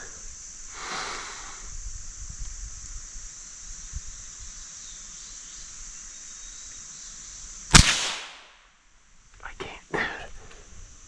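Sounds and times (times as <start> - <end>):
steady high-pitched hiss: 0.0 - 11.0
rifle shot: 7.7 - 8.6.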